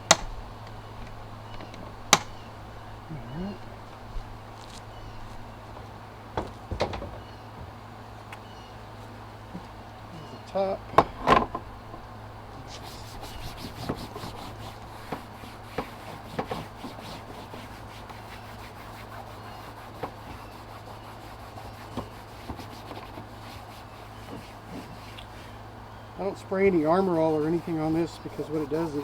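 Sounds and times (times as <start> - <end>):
brush rubbing plastic cover: 12.6 - 29.0.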